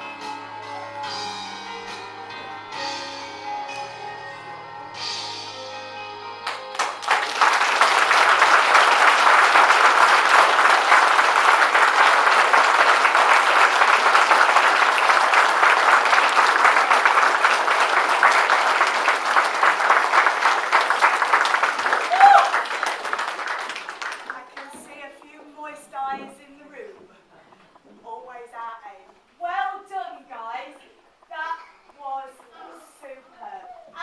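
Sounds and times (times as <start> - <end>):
music: 0.0 - 11.0
audience applauding: 6.4 - 24.9.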